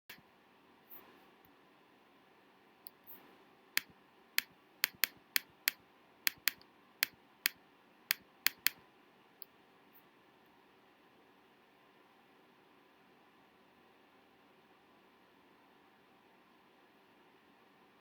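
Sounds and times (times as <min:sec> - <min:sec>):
sharp clicks: 0:03.8 - 0:08.8.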